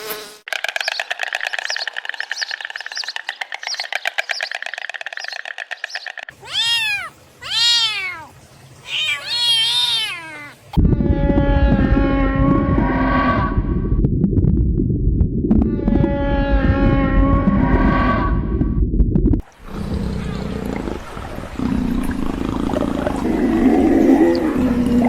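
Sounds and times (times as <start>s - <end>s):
cat meowing: 6.4s - 10.6s
loud deep sound: 10.8s - 25.0s.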